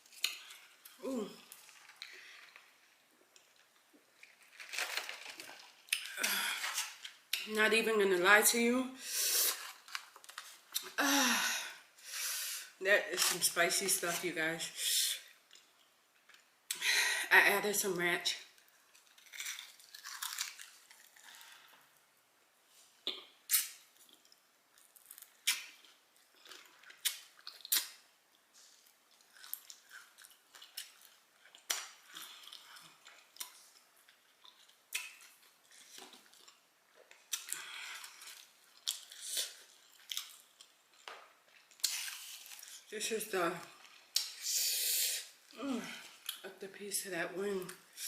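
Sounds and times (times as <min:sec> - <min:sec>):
crunchy clicks of chewing: 0:18.9 - 0:21.4.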